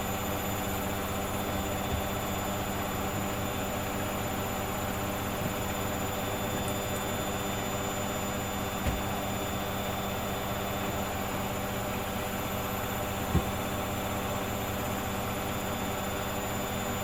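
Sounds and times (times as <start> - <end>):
washing machine motor hum: 0.0 - 17.0
washing machine low thump: 8.8 - 9.4, 13.1 - 14.1.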